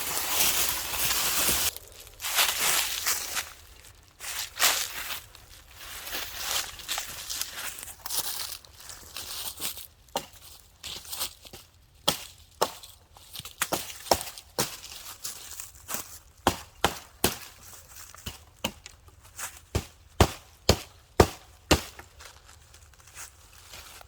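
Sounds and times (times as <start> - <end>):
axe chopping wood: 10.1 - 10.4, 12.0 - 12.8, 13.6 - 14.8, 16.4 - 17.6, 18.2 - 19.0, 19.7 - 22.0.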